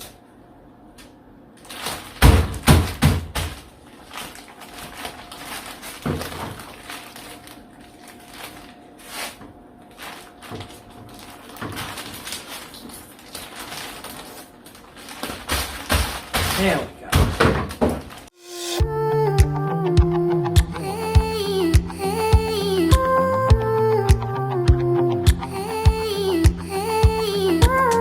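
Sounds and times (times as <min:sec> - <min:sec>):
insulation crinkling: 0:03.9 - 0:16.8.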